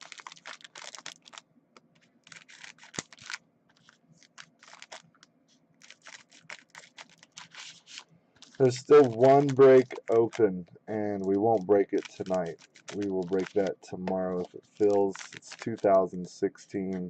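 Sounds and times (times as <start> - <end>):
computer keyboard typing: 5.8 - 7.8, 8.4 - 16.1.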